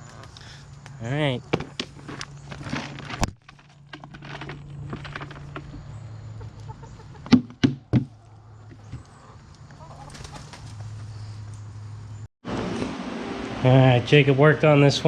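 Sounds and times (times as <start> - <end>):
chickens clucking: 5.4 - 11.6
sharp knocks: 7.3 - 8.2.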